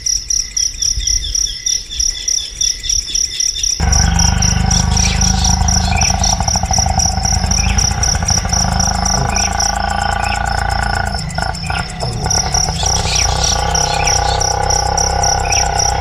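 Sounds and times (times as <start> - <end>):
insect chirping: 0.0 - 16.0
loud low rumble: 3.8 - 16.0.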